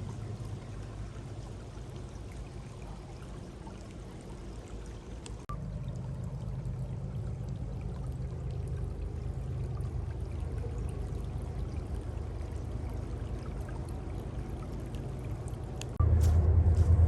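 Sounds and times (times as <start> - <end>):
faint ticks: 5.2 - 5.4, 15.8 - 16.0.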